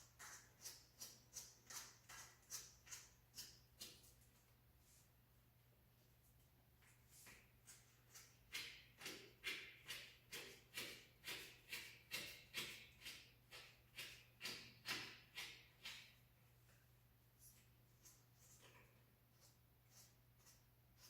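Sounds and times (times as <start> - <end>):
faint regular hand strokes: 0.0 - 8.4, 16.5 - 21.0.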